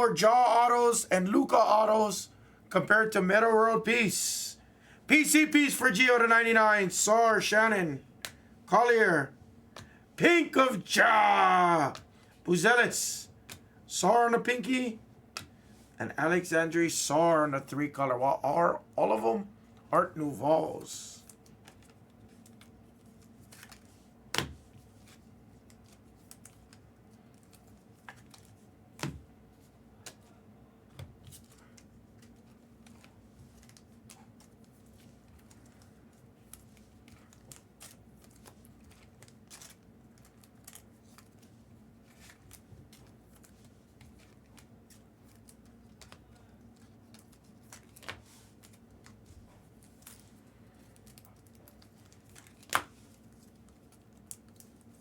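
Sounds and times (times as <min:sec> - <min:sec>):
faint steady hum: 0:00.0 - 0:55.0
cards clicking and tapping: 0:13.4 - 0:13.7
wrappers crinkling: 0:31.6 - 0:55.0.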